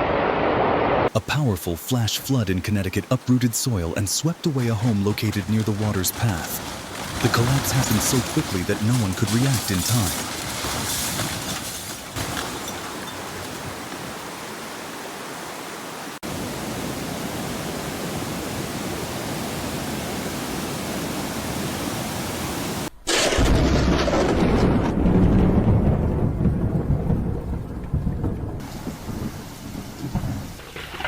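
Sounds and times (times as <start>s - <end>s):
heavy rain rushing: 1.1s - 22.9s, 24.4s - 31.0s
deep rumbling: 4.3s - 13.6s.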